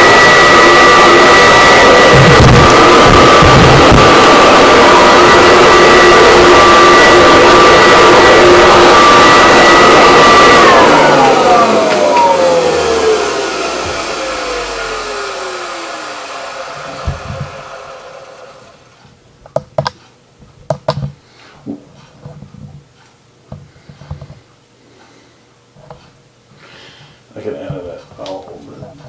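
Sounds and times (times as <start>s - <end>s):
vacuum cleaner motor spinning down: 0.0s - 18.9s
sharp clicks and knocks: 19.4s - 22.9s.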